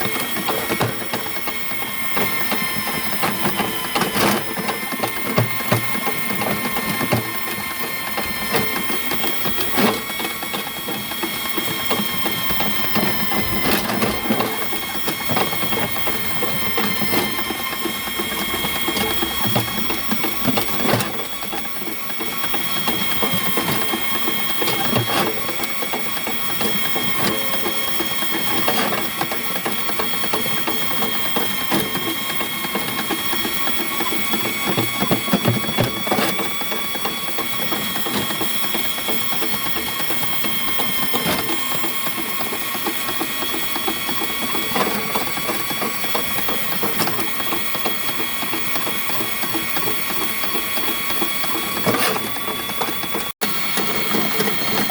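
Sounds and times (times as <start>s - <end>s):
drain snake motor whine: 0.1s - 29.0s.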